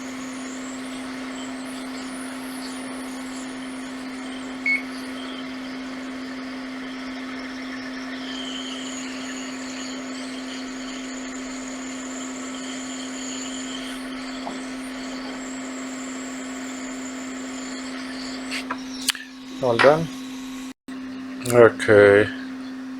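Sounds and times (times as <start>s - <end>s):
hot air hissing: 0.0s - 20.8s
hot air station fan hum: 0.0s - 22.9s.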